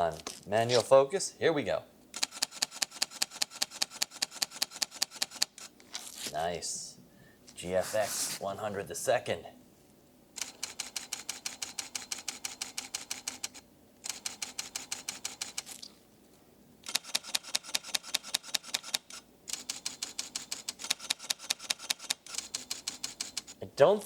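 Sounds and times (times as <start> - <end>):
camera shutter clicking: 0.7 - 0.9, 2.2 - 5.7, 16.8 - 23.5.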